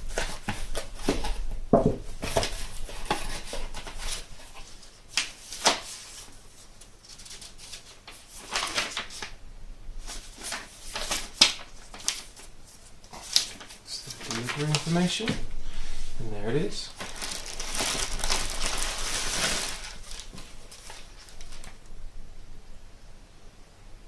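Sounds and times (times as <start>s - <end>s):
packaging crinkling and crackling: 2.1s - 9.4s, 10.0s - 15.4s, 16.8s - 21.9s.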